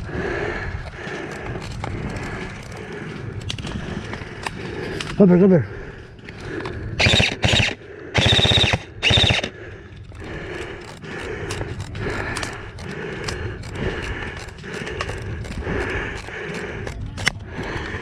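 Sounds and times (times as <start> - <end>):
airsoft rifle full-auto bursts: 7.0 - 9.6.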